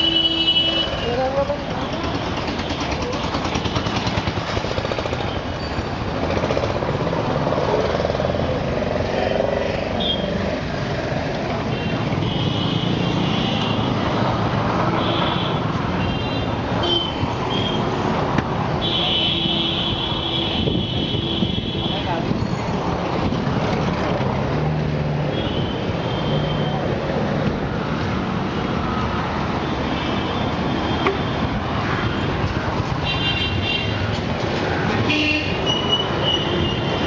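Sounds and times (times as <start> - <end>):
vehicle rumble: 21.8 - 37.0.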